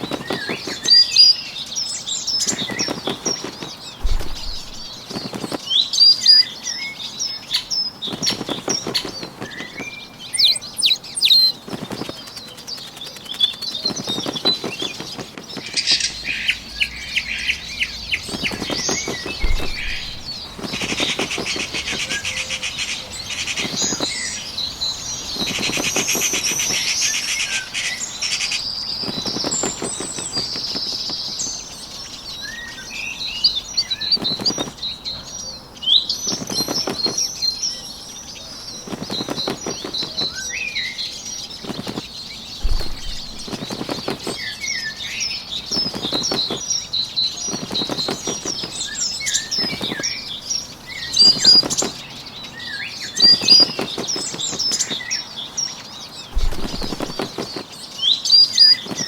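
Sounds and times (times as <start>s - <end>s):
bird wings flapping: 0.0s - 1.3s, 2.3s - 6.1s, 7.5s - 31.6s, 34.0s - 34.9s, 36.2s - 37.8s, 38.6s - 52.2s, 53.0s - 55.2s, 56.3s - 59.0s
small birds chirping: 0.0s - 59.0s.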